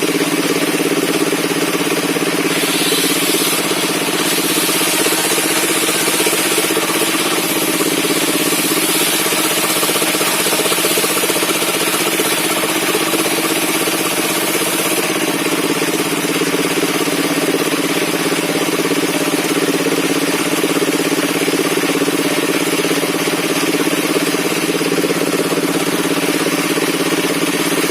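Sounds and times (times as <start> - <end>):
sawmill engine running: 0.0 - 27.9.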